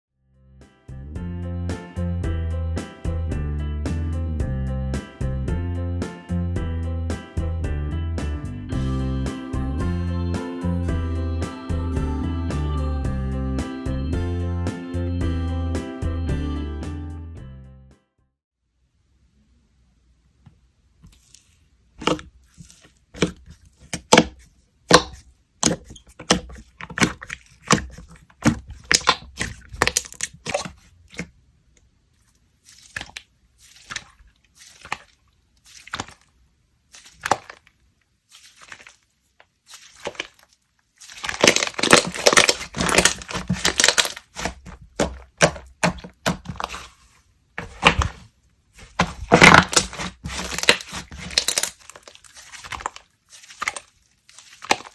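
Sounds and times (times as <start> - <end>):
slime crackling: 21.1 - 31.3, 32.4 - 54.9.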